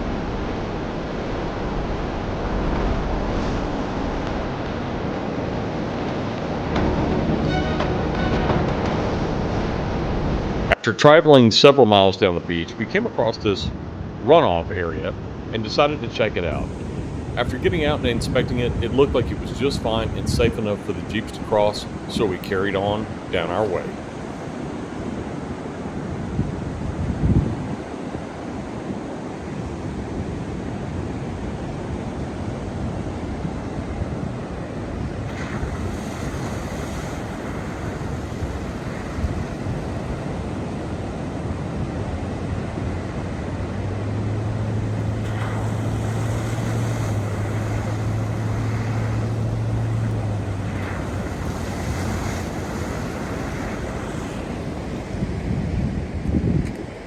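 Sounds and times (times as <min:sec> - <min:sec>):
engine humming: 0:00.0 - 0:10.7, 0:16.5 - 0:24.7, 0:33.1 - 0:57.0
surf: 0:00.0 - 0:57.0
wind on microphone: 0:16.4 - 0:57.0.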